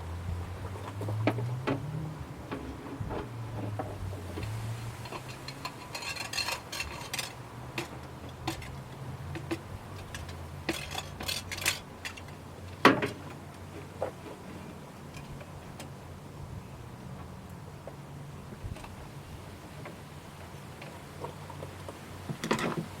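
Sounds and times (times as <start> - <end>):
metal tools clicking and clinking: 5.0 - 12.8.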